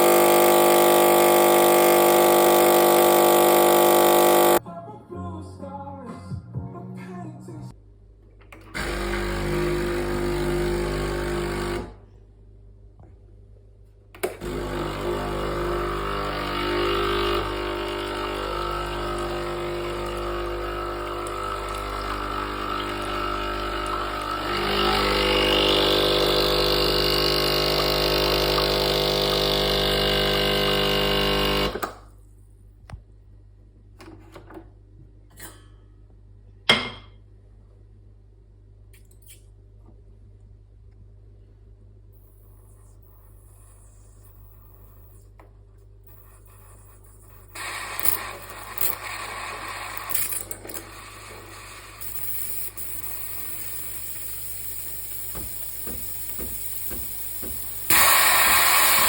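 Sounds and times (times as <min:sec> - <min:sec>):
espresso machine buzzing: 0:00.0 - 0:04.6, 0:08.8 - 0:12.0, 0:14.4 - 0:31.9, 0:46.1 - 0:59.0.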